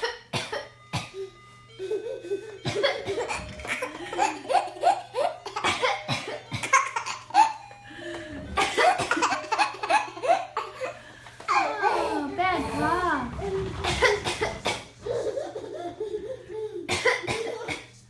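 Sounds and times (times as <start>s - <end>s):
woman coughing: 0.0s - 1.2s, 2.6s - 4.4s, 5.5s - 7.6s, 8.5s - 10.6s, 13.8s - 15.0s, 16.8s - 18.0s
baby laughing hysterically: 1.8s - 6.0s, 6.6s - 7.6s, 8.6s - 12.3s, 13.9s - 17.7s.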